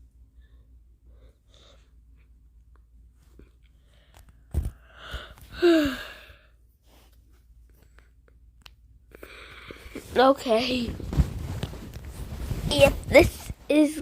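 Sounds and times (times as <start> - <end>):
person sighing: 5.0 - 6.5.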